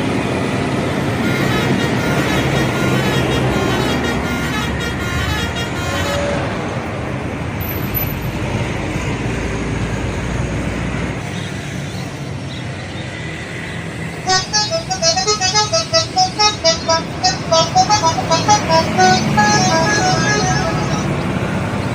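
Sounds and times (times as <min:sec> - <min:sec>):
bus engine rumble: 0:00.0 - 0:21.9
road traffic noise: 0:00.0 - 0:21.9
bus horn playing short notes: 0:01.2 - 0:06.5, 0:14.3 - 0:21.5.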